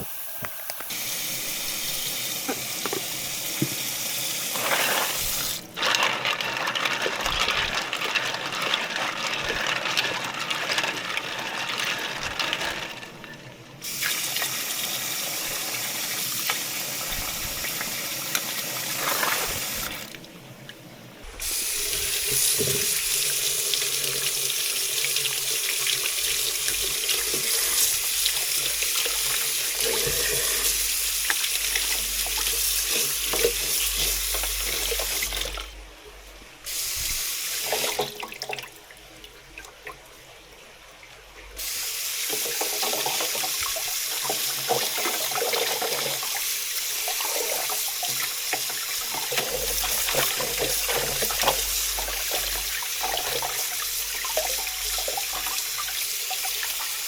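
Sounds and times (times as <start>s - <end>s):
tap water running into sink: 0.4s - 13.1s, 13.8s - 20.8s, 21.4s - 35.7s, 37.0s - 40.0s, 41.6s - 57.0s
bright water hiss: 21.4s - 35.5s, 36.6s - 38.0s, 41.6s - 57.0s.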